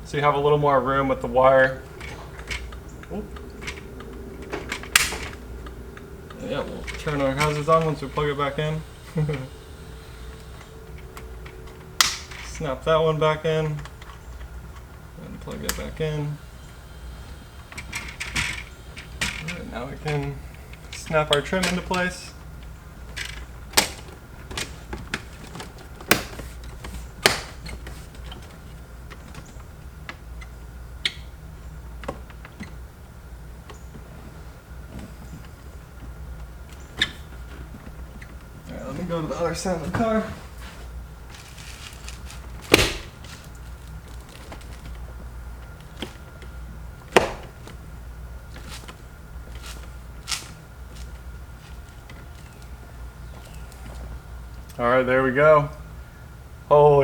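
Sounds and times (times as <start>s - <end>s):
steady low hum: 0.0s - 57.0s
plastic clips snapping: 4.7s - 5.4s, 12.0s - 12.4s, 23.2s - 26.4s, 27.2s - 27.7s, 41.4s - 45.0s
plastic trim clicks and knocks: 26.0s - 26.5s, 27.2s - 27.7s, 47.1s - 47.8s.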